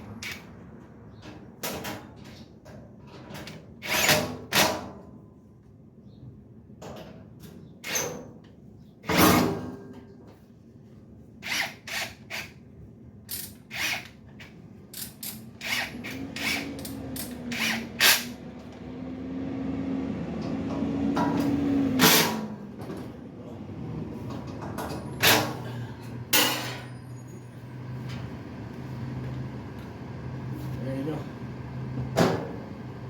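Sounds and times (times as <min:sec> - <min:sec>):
power drill driving screws: 0:13.7 - 0:14.2, 0:15.6 - 0:18.4.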